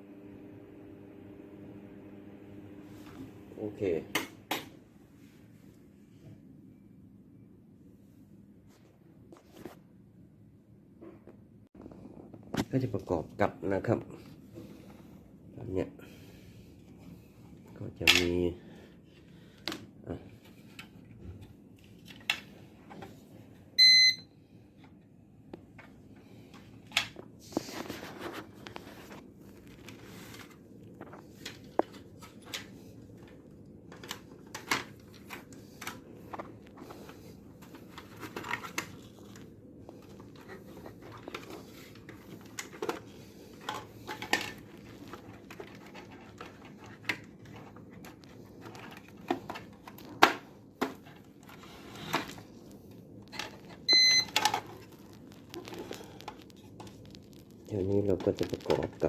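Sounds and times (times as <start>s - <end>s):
short loud electronic beep: 23.8s - 24.2s
clicks and knocks of handled parts: 40.0s - 52.4s.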